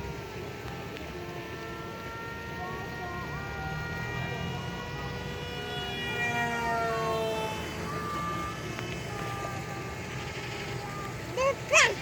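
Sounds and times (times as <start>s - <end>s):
model jet whining past: 0.0s - 12.0s.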